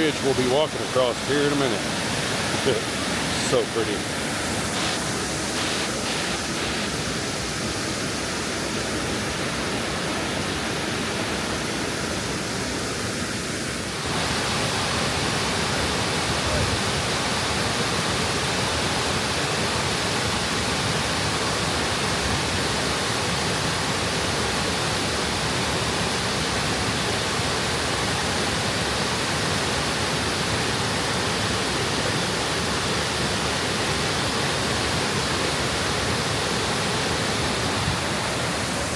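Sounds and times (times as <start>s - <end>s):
waterfall rushing: 0.0s - 28.0s, 28.6s - 38.9s.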